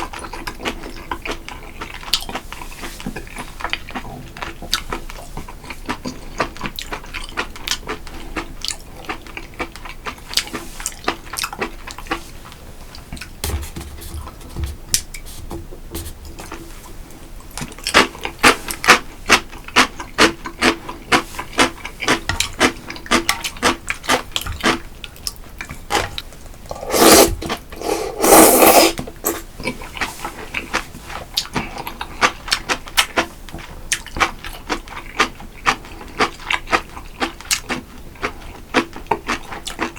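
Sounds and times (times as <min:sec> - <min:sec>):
wet chewing and mouth clicks: 0:00.0 - 0:13.4, 0:16.2 - 0:39.9
loud slurps: 0:26.7 - 0:29.5.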